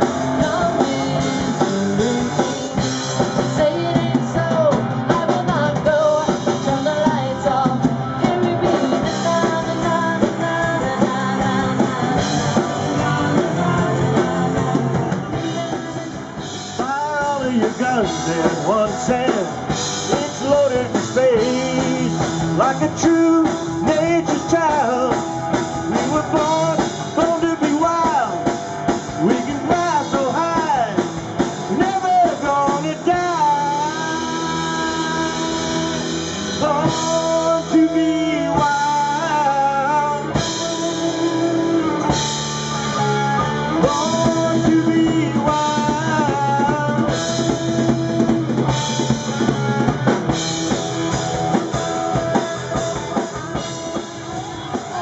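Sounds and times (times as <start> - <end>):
bass: 0.0 - 55.0
drum kit: 0.0 - 55.0
electric guitar lead: 0.0 - 55.0.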